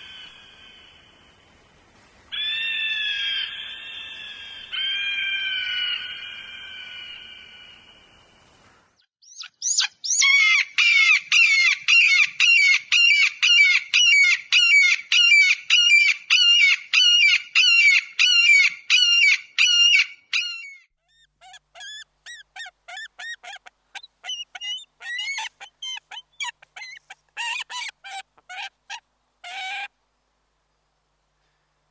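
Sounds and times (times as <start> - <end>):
eagle calling: 9.3 - 29.9.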